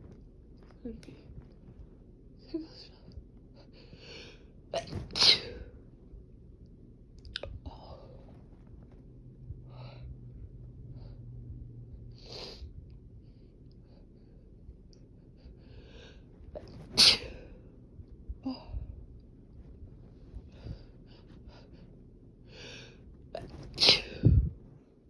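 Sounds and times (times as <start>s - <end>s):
quiet breathing: 0.0s - 6.0s, 7.5s - 25.0s
person sneezing: 4.8s - 5.6s, 16.8s - 17.4s, 23.4s - 24.3s.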